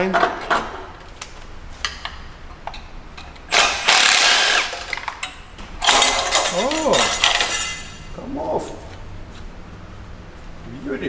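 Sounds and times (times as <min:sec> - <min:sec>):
power tool burst: 0:03.5 - 0:05.2, 0:05.8 - 0:07.8.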